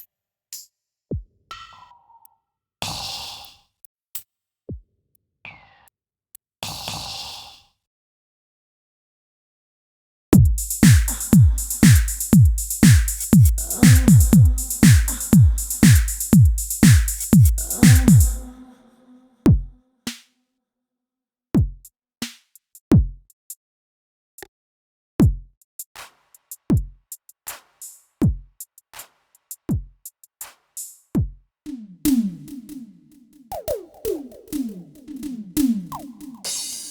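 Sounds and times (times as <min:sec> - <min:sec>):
drum machine beat: 0:10.4 - 0:18.4, 0:21.6 - 0:21.9, 0:22.9 - 0:23.2, 0:25.2 - 0:25.5, 0:26.7 - 0:27.2, 0:28.2 - 0:28.6, 0:31.2 - 0:31.4, 0:33.5 - 0:36.9.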